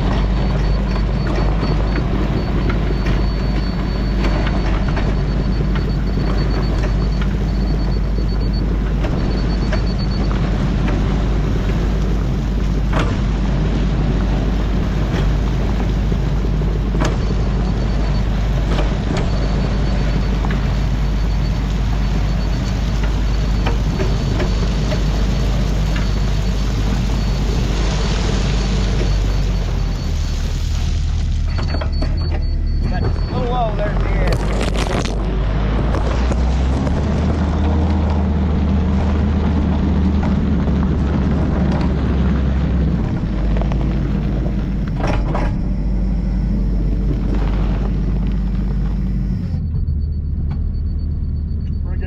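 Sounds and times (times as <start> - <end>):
diesel engine running: 0.0 - 52.0
rapid high beeping: 31.6 - 34.8.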